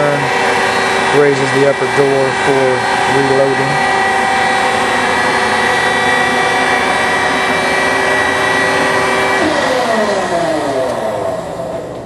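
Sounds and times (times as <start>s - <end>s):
electric motor whining: 0.0s - 12.0s.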